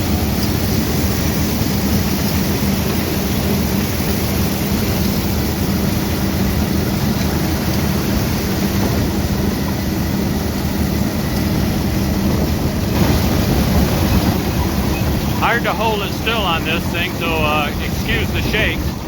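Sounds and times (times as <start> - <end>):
tractor engine drone: 0.0 - 19.0.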